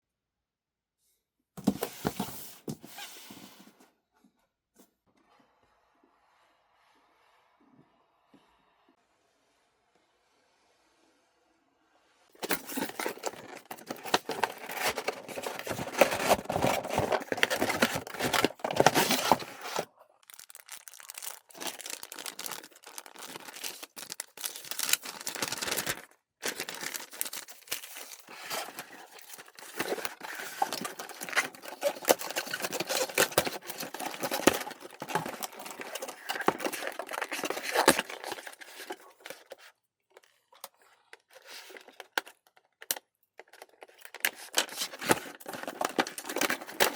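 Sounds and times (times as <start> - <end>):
packaging tearing and crinkling: 12.4 - 39.6, 43.5 - 46.9.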